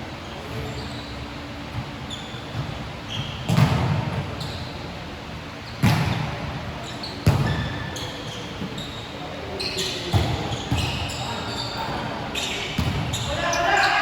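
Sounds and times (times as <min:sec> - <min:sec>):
sneakers squeaking on floor: 0:00.2 - 0:14.0
basketball thudding with echo: 0:03.5 - 0:04.2, 0:12.8 - 0:13.2.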